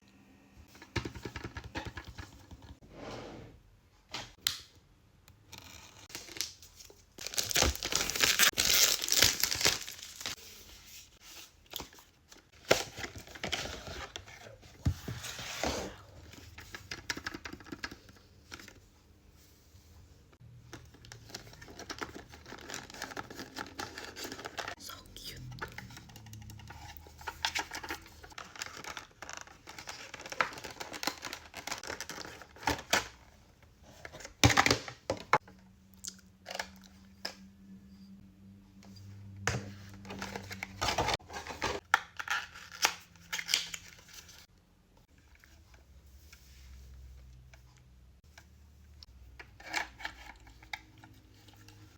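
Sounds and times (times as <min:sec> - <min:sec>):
packaging tearing and crinkling: 0:07.2 - 0:10.4.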